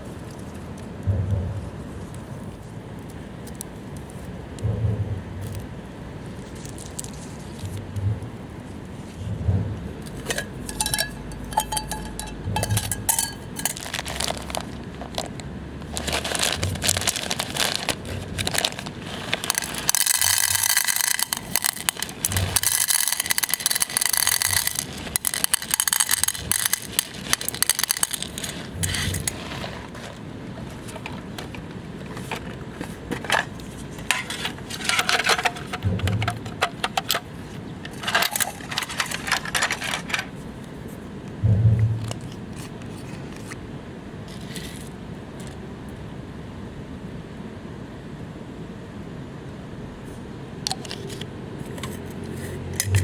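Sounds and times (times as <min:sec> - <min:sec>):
metal clinks and scrapes: 0:10.2 - 0:14.6, 0:19.4 - 0:30.1, 0:34.1 - 0:37.3, 0:37.9 - 0:40.3, 0:51.8 - 0:53.0.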